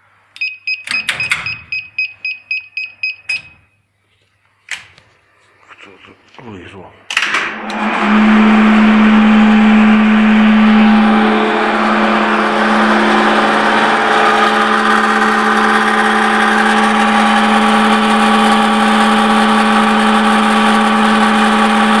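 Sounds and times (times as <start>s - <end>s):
high steady whine: 7.5s - 22.0s
elevator machine humming: 7.6s - 22.0s.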